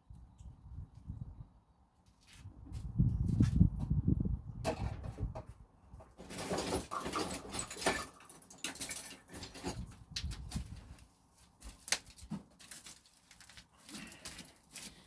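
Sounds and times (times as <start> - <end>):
sharp metallic clink: 11.9 - 12.3.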